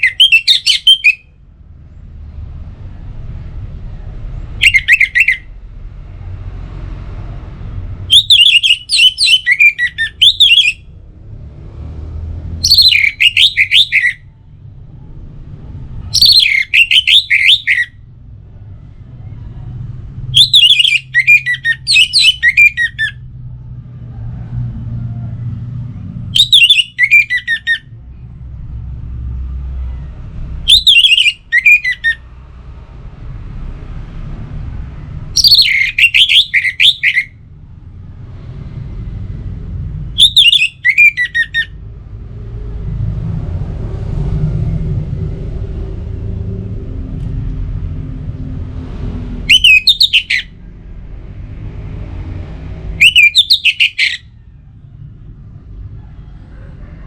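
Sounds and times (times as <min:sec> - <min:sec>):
thrush singing: 0:00.0 - 0:01.4, 0:04.4 - 0:05.7, 0:07.5 - 0:10.9, 0:12.5 - 0:14.3, 0:15.7 - 0:18.0, 0:20.0 - 0:23.2, 0:26.3 - 0:28.0, 0:30.6 - 0:32.3, 0:35.3 - 0:37.4, 0:40.2 - 0:41.8, 0:48.4 - 0:55.3
low background rumble: 0:00.0 - 0:57.0.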